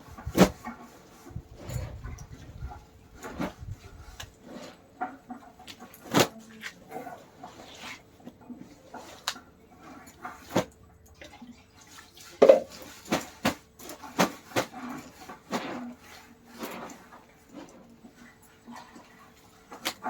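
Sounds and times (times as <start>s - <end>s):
wet slaps and splashes: 19.7s - 20.0s.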